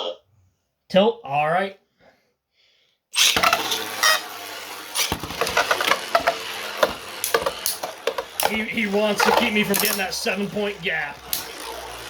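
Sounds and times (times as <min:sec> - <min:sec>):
spinning tops launched: 0:03.2 - 0:12.0
spinning tops scraping: 0:03.2 - 0:12.0
tops clacking together: 0:03.2 - 0:12.0.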